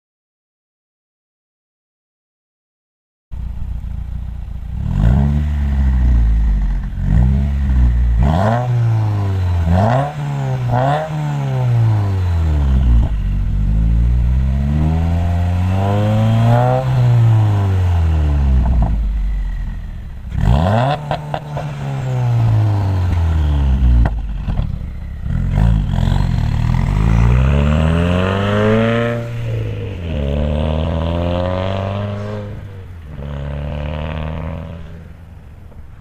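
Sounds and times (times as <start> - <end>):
car engine revving: 3.4 - 35.7.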